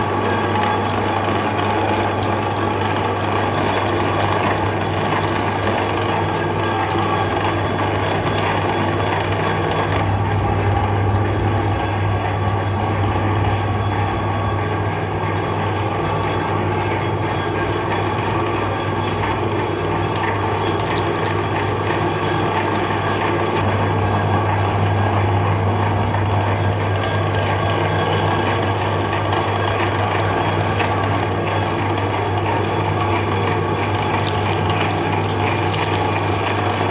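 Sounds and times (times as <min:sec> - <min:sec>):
meat grinder motor humming: 0:00.0 - 0:10.2, 0:15.8 - 0:36.9.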